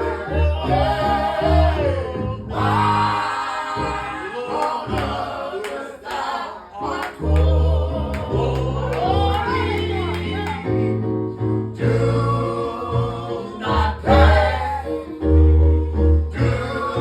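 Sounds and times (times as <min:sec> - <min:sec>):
gospel choir singing: 0:00.0 - 0:17.0
low bass notes: 0:07.2 - 0:17.0.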